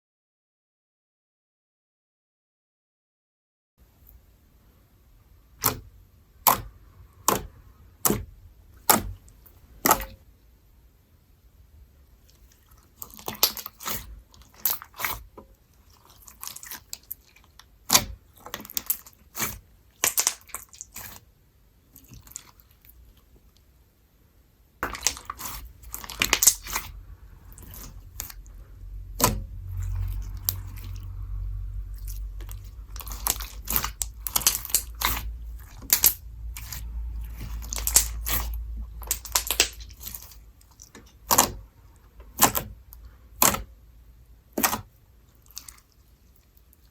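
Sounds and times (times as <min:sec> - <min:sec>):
slime squelching and popping: 0:05.6 - 0:10.2, 0:12.2 - 0:21.2, 0:21.9 - 0:23.2, 0:24.8 - 0:43.7, 0:44.5 - 0:46.0
low handling rumble: 0:25.6 - 0:40.5.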